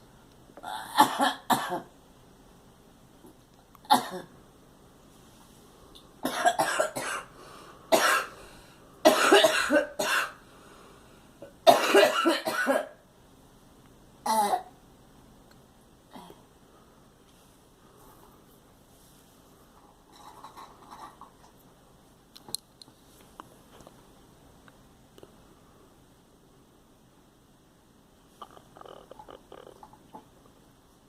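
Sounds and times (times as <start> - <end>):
girl coughing: 0.7 - 1.9, 6.2 - 7.3, 7.9 - 8.3, 9.0 - 10.4, 11.7 - 13.0.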